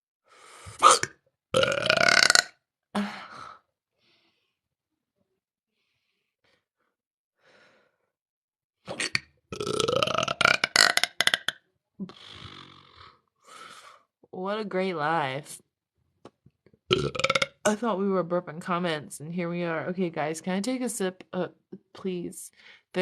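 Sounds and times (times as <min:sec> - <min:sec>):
woman belching loudly: 0:00.8 - 0:02.6, 0:08.9 - 0:11.6, 0:16.9 - 0:17.8.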